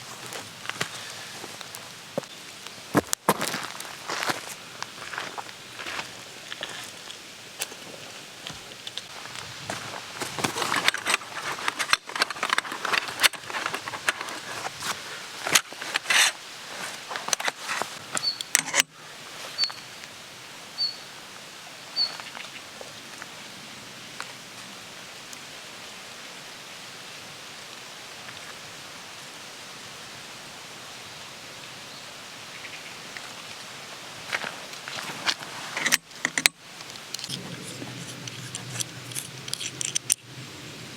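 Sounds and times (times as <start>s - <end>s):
steady hiss: 0.0s - 40.9s
rustling and clicking: 8.5s - 18.9s, 34.3s - 40.2s
bird chirping: 18.1s - 18.6s, 19.5s - 20.0s, 20.8s - 21.1s, 21.9s - 22.7s.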